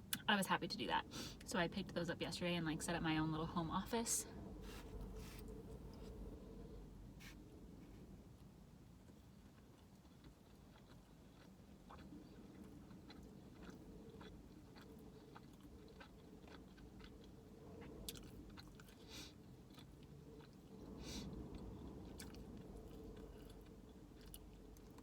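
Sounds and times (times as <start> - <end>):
person chewing food: 9.0 - 25.0.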